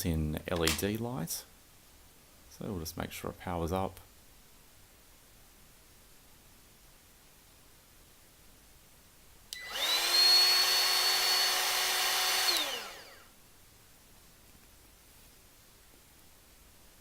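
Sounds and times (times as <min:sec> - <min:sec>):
router motor whining: 0:09.6 - 0:13.3.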